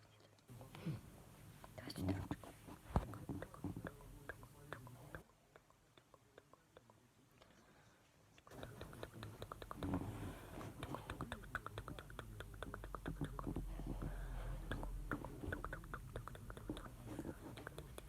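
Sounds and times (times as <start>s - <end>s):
steady low hum: 8.5s - 18.0s.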